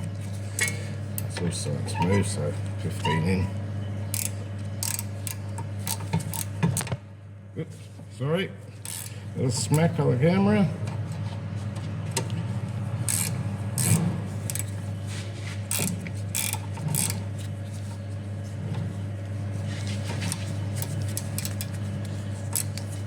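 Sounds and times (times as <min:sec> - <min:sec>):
steady low hum: 0:00.0 - 0:23.0
metal spanner clicking and scraping: 0:04.2 - 0:06.5, 0:08.9 - 0:09.8, 0:13.0 - 0:14.8, 0:15.7 - 0:17.2, 0:20.2 - 0:21.8, 0:22.4 - 0:23.0.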